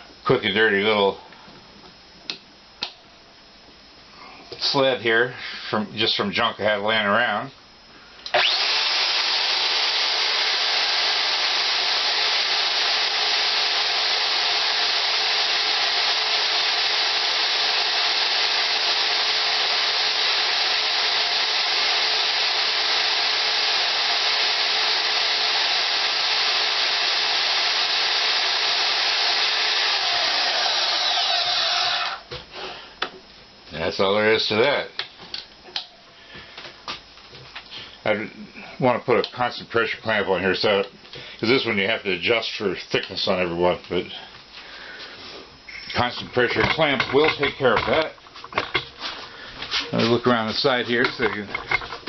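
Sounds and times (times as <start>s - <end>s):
band saw running: 8.3s - 32.3s.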